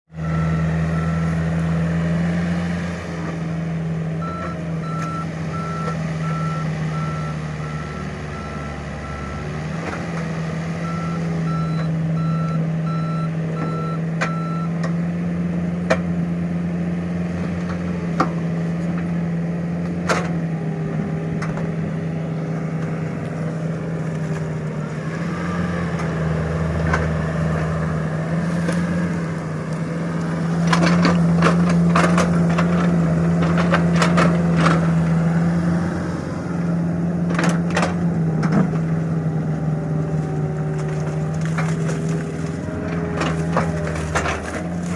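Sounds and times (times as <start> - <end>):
heavy diesel machinery running: 0.1 - 44.9
reversing alarm beeping: 0.2 - 1.4, 4.2 - 9.6, 10.8 - 14.8.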